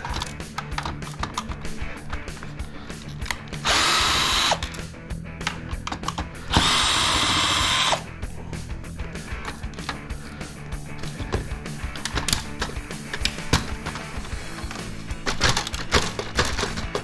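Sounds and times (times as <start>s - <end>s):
background music: 0.0s - 17.0s
power drill motor running: 3.6s - 4.8s, 6.4s - 8.1s.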